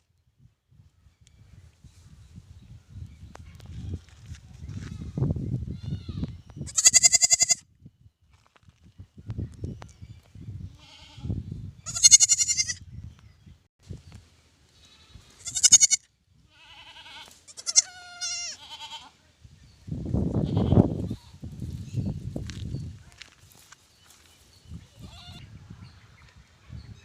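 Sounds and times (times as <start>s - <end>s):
lamb bleating: 5.8s - 7.6s, 10.8s - 11.3s, 11.9s - 12.8s, 14.8s - 19.1s.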